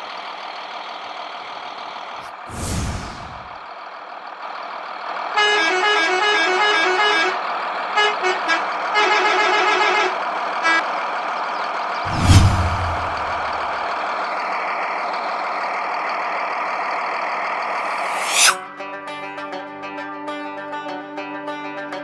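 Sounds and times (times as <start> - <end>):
quick whoosh: 2.2 - 3.5, 12.1 - 13.9, 17.8 - 18.6
engine-like hum: 12.1 - 13.9, 17.6 - 18.6.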